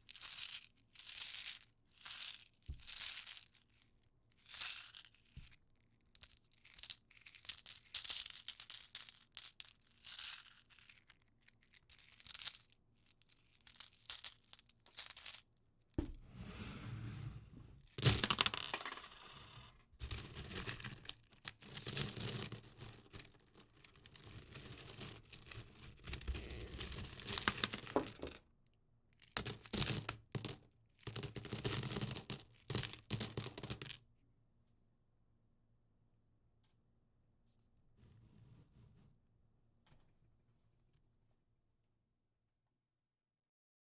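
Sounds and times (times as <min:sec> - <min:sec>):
coins clinking and jingling: 0:18.0 - 0:19.4, 0:26.4 - 0:28.4, 0:29.4 - 0:33.9
loud coin clatter: 0:18.0 - 0:21.1, 0:26.7 - 0:28.4.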